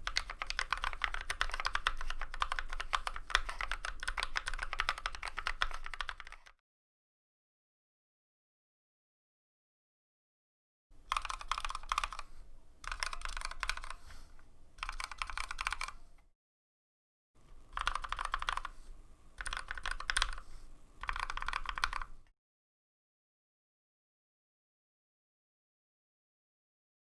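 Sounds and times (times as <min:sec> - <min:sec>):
mechanical keyboard typing: 0:00.0 - 0:06.5, 0:11.1 - 0:14.1, 0:14.8 - 0:16.0, 0:17.7 - 0:18.8, 0:19.4 - 0:22.3.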